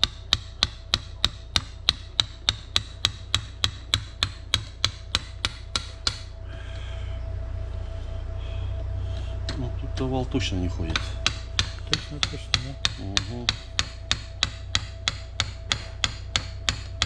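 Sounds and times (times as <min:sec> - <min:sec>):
hammer tapping on metal: 0:00.0 - 0:06.3, 0:10.9 - 0:17.0
steady low hum: 0:00.0 - 0:17.0.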